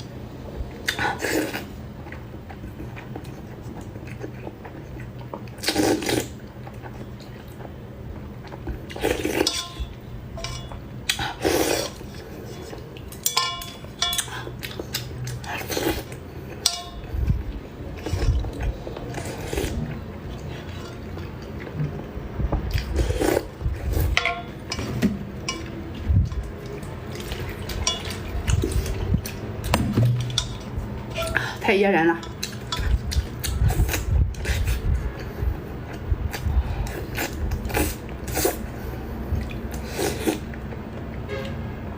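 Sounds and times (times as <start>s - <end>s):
wet eating sounds: 0.7s - 31.6s, 32.2s - 41.6s
utensils clinking against bowl: 8.9s - 17.2s, 24.1s - 33.5s.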